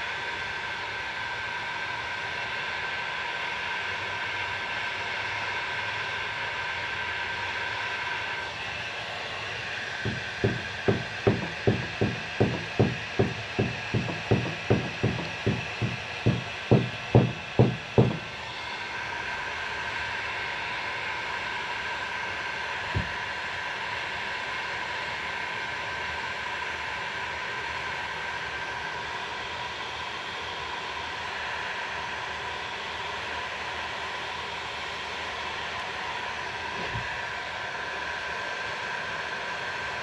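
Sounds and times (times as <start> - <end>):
steady hum with faint whine: 0.0 - 27.7
dull thuds: 10.0 - 18.3, 23.0 - 23.2.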